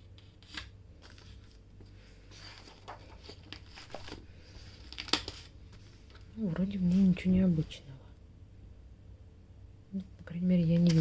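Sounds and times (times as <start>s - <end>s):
paper pages rustling: 0.0s - 7.7s, 10.7s - 11.0s.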